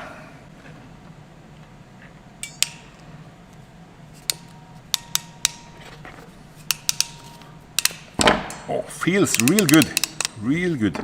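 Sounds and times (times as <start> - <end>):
crimping tool metal clicks: 2.4 - 3.1, 4.2 - 10.5.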